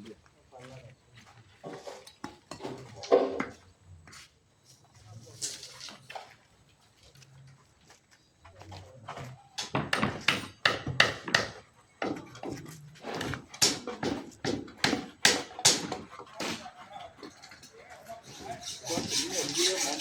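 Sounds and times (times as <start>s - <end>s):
construction knocks: 9.6s - 17.3s.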